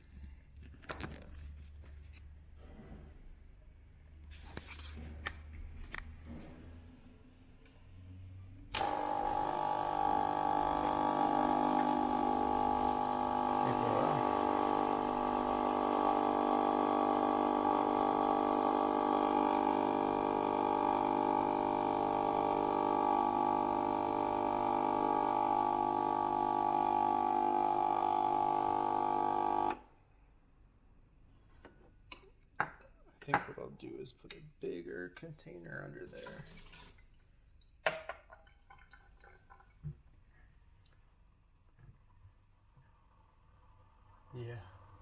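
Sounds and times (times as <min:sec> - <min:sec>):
espresso machine pump humming: 0:08.8 - 0:29.8.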